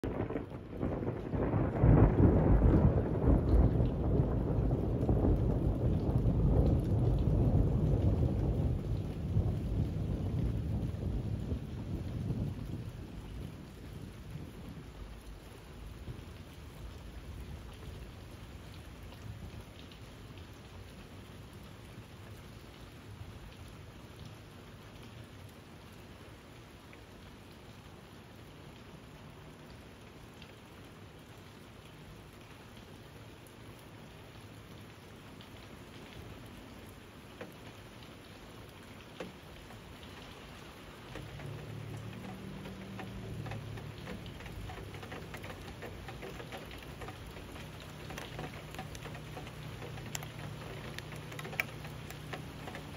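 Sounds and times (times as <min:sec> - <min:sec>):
steady rain falling: 0:00.0 - 0:52.9
drops tapping: 0:41.1 - 0:52.9.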